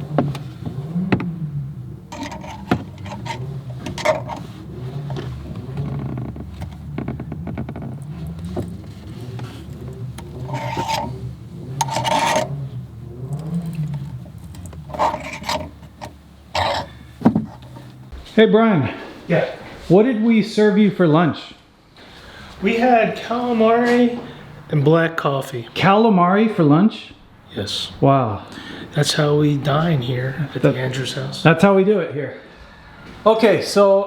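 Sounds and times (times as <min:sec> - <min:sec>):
thread tap scraping metal: 0:02.1 - 0:05.3, 0:08.0 - 0:12.6, 0:13.3 - 0:18.0.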